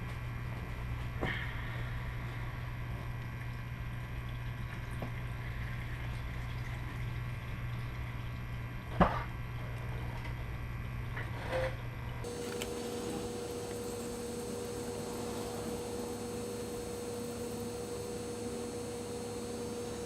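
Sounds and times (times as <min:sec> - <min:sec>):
steady low hum: 0:00.0 - 0:20.0
oil trickling into a drain pan: 0:02.6 - 0:11.1.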